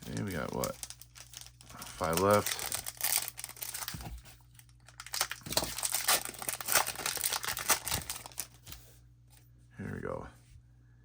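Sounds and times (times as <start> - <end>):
foil wrapper crinkling: 0.0 - 8.8.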